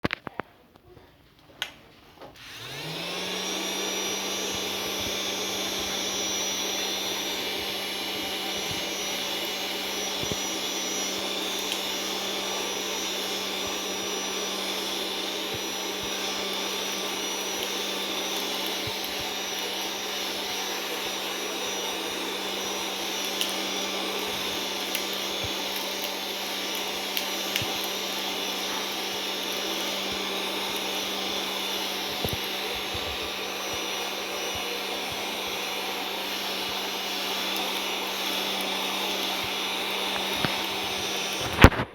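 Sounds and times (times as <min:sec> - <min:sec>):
handheld vacuum motor whining: 0:02.2 - 0:41.9.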